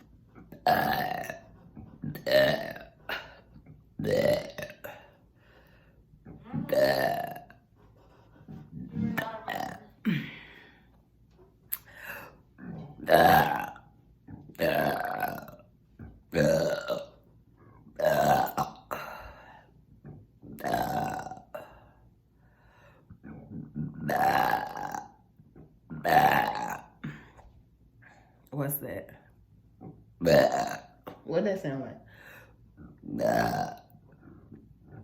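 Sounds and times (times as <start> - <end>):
person burping loudly: 0.0 - 5.2, 6.2 - 7.7, 8.7 - 10.8, 11.7 - 15.7, 16.3 - 17.2, 18.0 - 19.6, 20.6 - 22.0, 23.2 - 25.3, 25.9 - 27.4, 30.2 - 31.1, 32.8 - 34.6.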